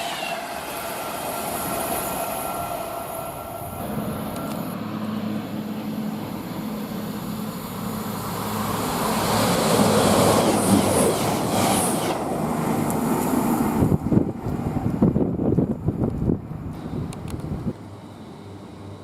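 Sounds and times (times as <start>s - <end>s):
high squeals of train: 0.0s - 6.8s, 8.4s - 14.0s, 16.7s - 17.3s
train wheels rushing on rail: 0.0s - 17.7s.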